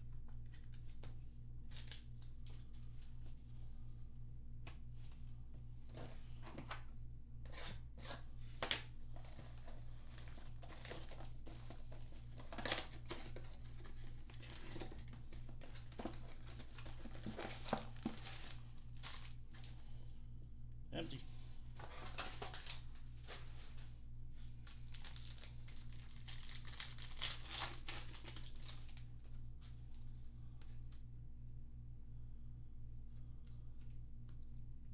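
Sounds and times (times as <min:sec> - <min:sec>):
wrappers tearing and crinkling: 0:01.6 - 0:02.6, 0:08.6 - 0:19.7, 0:21.9 - 0:23.4, 0:24.6 - 0:29.1
steady low hum: 0:13.0 - 0:34.9.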